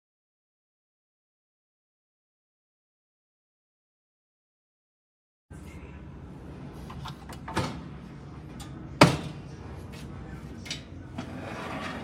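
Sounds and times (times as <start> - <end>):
steady low hum: 5.5 - 12.0.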